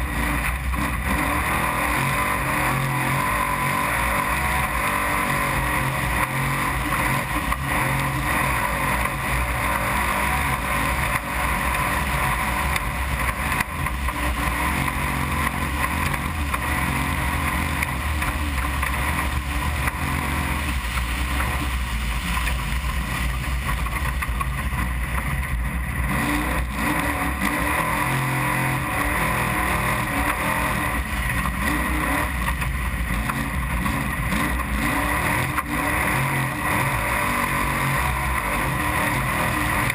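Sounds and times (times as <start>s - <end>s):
truck engine running hard: 0.0s - 39.9s.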